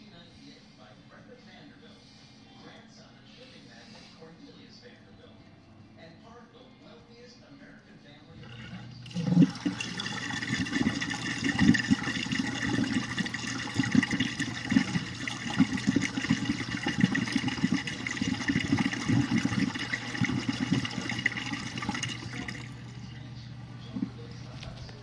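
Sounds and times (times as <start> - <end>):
water splashing in dishwasher: 8.4 - 23.1
dishwasher pump humming: 8.4 - 25.0.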